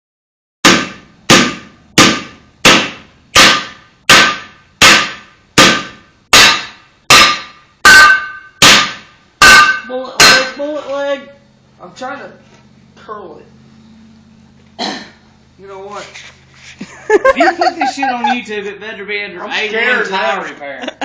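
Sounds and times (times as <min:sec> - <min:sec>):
hammer striking metal: 0:00.6 - 0:10.6.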